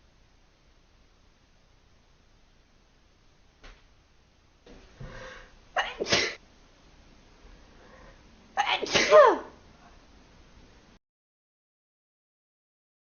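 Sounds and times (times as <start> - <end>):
person sneezing: 5.1 - 6.4, 8.6 - 9.6.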